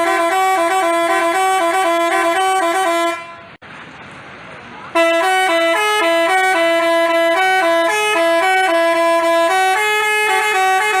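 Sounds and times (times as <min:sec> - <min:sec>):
multi-tone bus horn melody: 0:00.0 - 0:03.6, 0:04.9 - 0:11.0.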